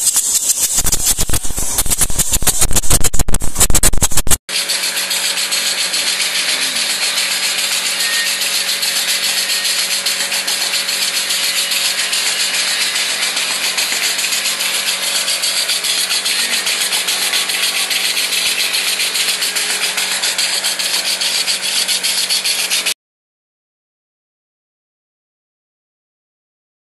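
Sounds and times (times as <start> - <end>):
machine clattering: 4.5 - 23.0.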